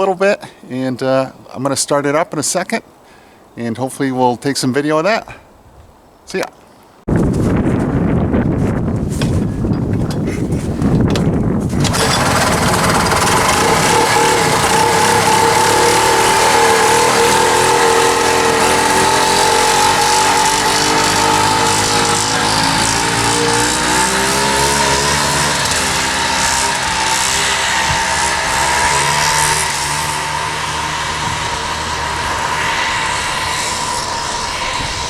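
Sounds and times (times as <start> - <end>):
snowmobile two-stroke engine running: 11.7 - 35.0.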